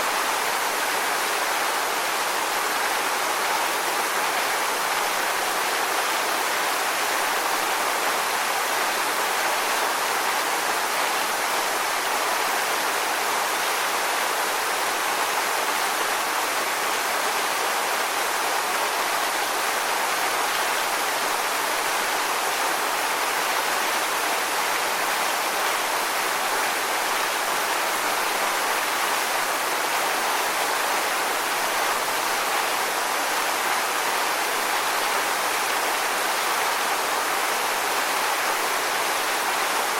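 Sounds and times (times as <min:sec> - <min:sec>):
waterfall rushing and splashing: 0:00.0 - 0:39.9.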